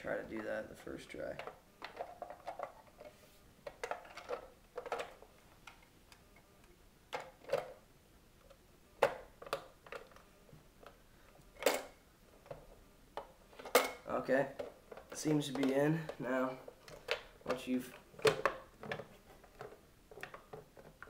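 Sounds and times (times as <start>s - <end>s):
plastic clicks and knocks: 16.8s - 21.0s.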